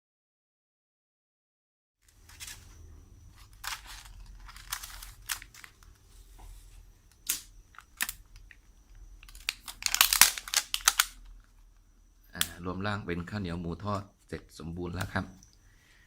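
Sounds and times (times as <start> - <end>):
food packaging crinkling: 2.0 - 6.1, 7.2 - 11.6.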